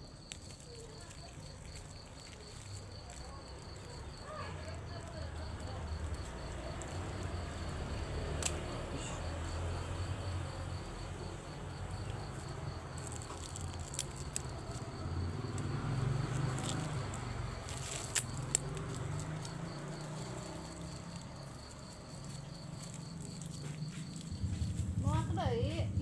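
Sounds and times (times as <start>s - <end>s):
insects chirping: 0.0s - 26.0s
steady low rumble: 20.7s - 26.0s.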